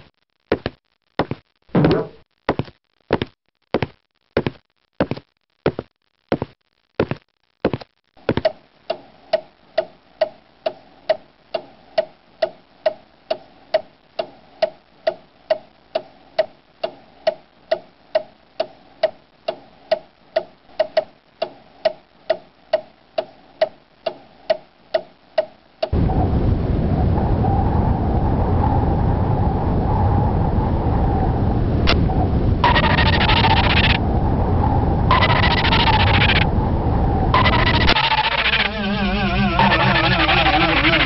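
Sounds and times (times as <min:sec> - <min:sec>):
clock ticking: 0:08.3 - 0:25.9.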